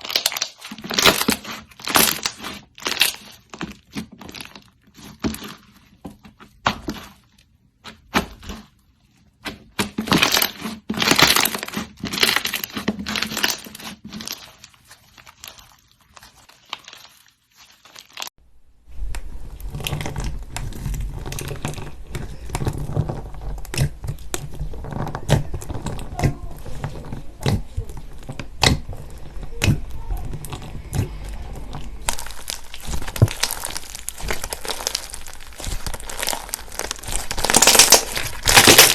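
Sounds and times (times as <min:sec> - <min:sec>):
low rumble: 0:18.5 - 0:38.5.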